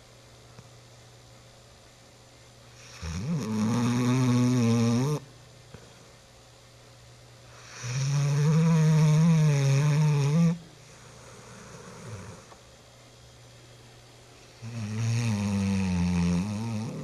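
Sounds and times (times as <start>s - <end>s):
dog snoring: 2.8s - 5.3s, 7.5s - 12.6s, 14.6s - 17.0s
dog breathing quietly: 9.4s - 12.6s.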